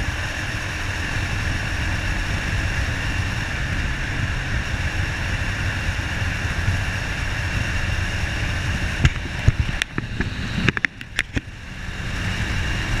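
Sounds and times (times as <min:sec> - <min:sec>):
wind and road noise: 0:00.0 - 0:13.0
sharp clicks and knocks: 0:09.0 - 0:11.5.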